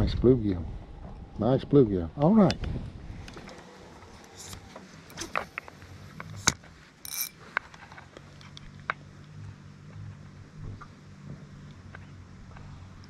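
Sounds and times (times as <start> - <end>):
fishing tackle clicking: 6.4 - 7.4.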